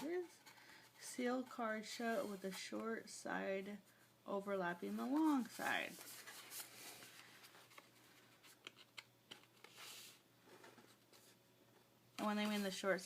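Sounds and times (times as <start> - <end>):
card stock rustling and folding: 4.8 - 11.4, 12.2 - 13.0.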